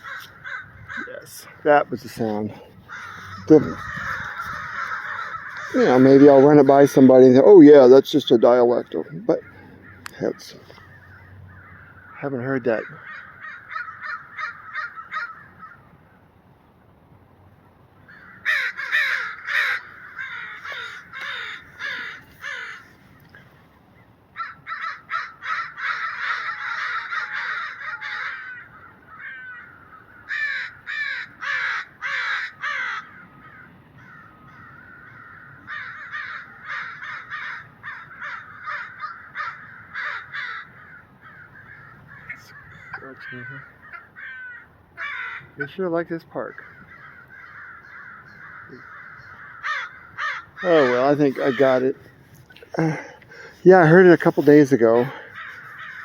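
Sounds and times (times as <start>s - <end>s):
crows cawing: 0.0s - 7.6s, 8.4s - 16.3s, 18.1s - 23.7s, 24.3s - 56.0s.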